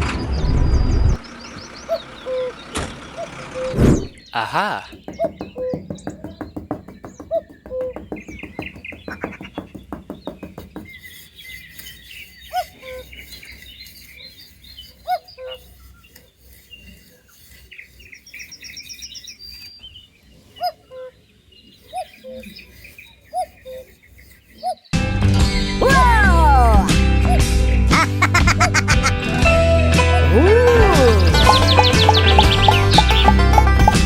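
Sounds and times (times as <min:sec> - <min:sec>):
small birds chirping: 0:00.0 - 0:28.2, 0:30.7 - 0:34.0.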